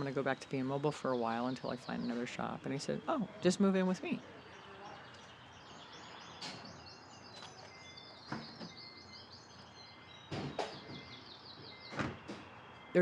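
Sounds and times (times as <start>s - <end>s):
small birds chirping: 0.0s - 13.0s.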